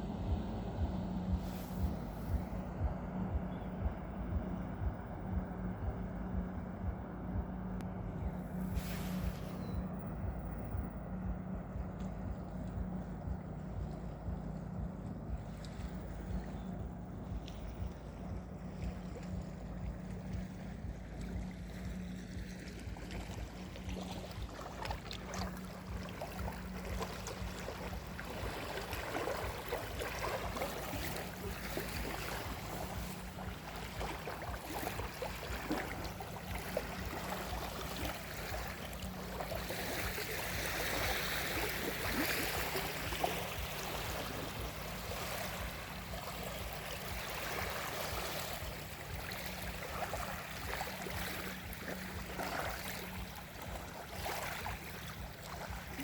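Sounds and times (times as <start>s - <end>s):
low hum: 0.0s - 56.0s
waves lapping at shore: 0.0s - 56.0s.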